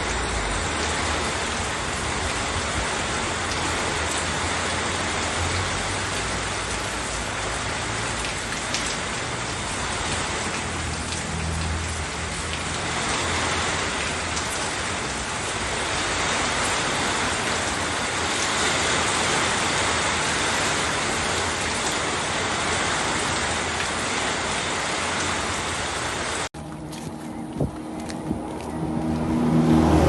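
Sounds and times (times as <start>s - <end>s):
heavy rain: 0.0s - 26.5s.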